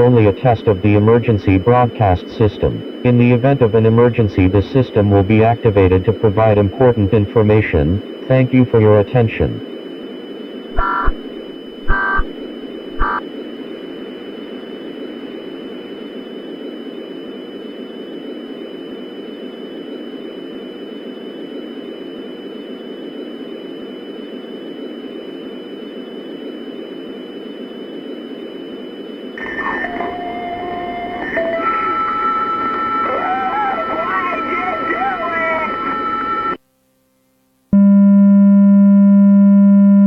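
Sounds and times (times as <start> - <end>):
electronic data bursts: 0.0 - 9.6, 10.5 - 13.2, 29.4 - 36.6
low broadcast hiss: 0.0 - 37.8
faint high-pitched tones: 12.9 - 36.6.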